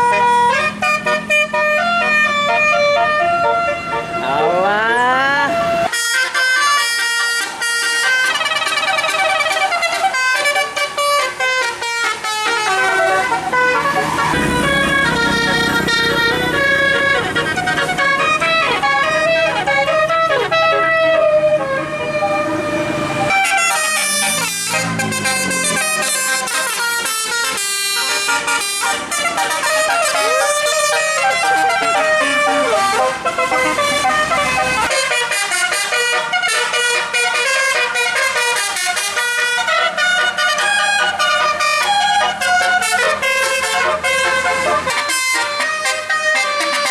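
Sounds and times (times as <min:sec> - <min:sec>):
musical air horn melody: 0:00.0 - 0:46.9
low engine rumble: 0:08.4 - 0:34.9.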